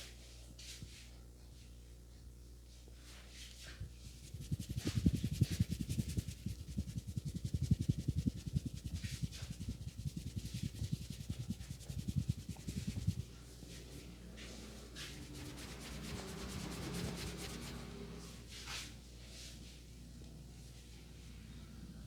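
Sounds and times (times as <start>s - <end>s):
hands stroking head: 4.2s - 13.3s, 15.0s - 18.2s.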